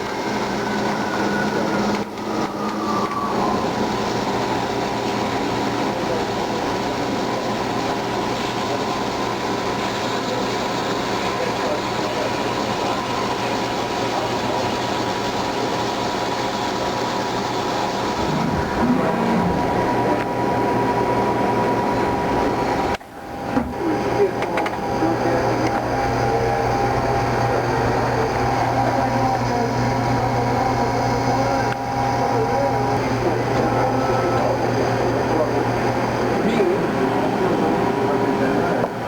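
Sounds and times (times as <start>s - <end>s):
lathe machining with spindle whine: 0.0s - 39.0s
brief rising sound: 18.2s - 20.2s.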